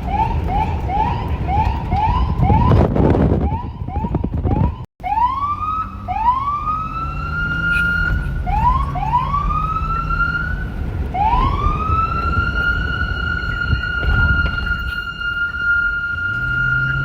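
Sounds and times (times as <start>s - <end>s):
police siren wailing: 0.0s - 17.0s
low rumble: 8.1s - 16.5s.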